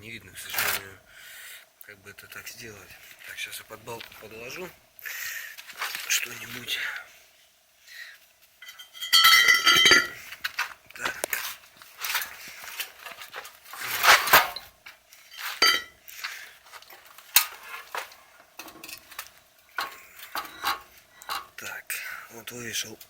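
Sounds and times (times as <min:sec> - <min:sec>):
scrapes: 0:00.4 - 0:01.0, 0:02.9 - 0:06.8, 0:08.6 - 0:21.8
metal clanking and knocking: 0:08.6 - 0:10.2, 0:13.0 - 0:14.6, 0:15.4 - 0:16.0, 0:16.9 - 0:21.6.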